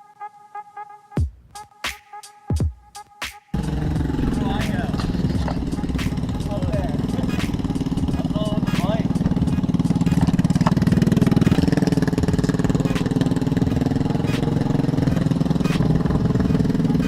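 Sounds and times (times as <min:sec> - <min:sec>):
engine running with rapid pulsing: 0:03.6 - 0:17.0.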